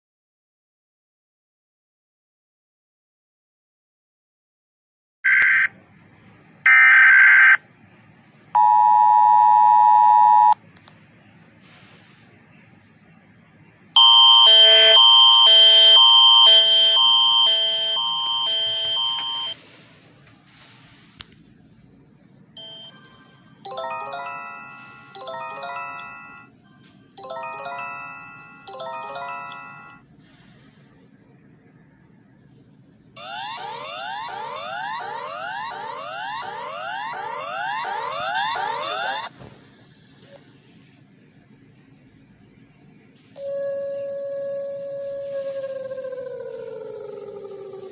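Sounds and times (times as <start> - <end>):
alert chimes: 14.0 - 19.6, 22.6 - 26.5, 27.2 - 30.0
two-tone attention signal: 14.0 - 19.6, 22.6 - 30.0, 43.4 - 45.6.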